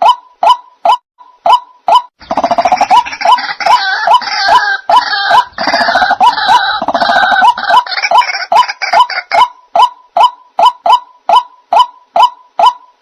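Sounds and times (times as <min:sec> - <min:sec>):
waterhen hooked calls: 0:00.0 - 0:12.9
harsh croaking chorus: 0:02.2 - 0:09.4.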